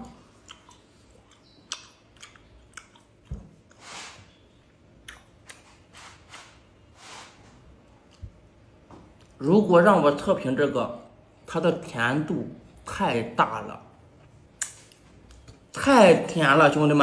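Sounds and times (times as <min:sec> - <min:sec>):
person chewing gum: 0:00.0 - 0:03.9, 0:05.0 - 0:05.8.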